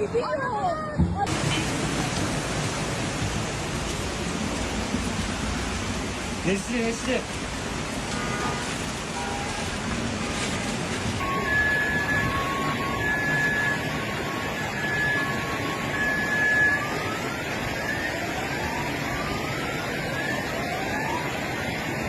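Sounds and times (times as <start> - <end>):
heavy rain and floodwater rushing: 0.0 - 22.0
emergency vehicle siren: 11.2 - 22.0.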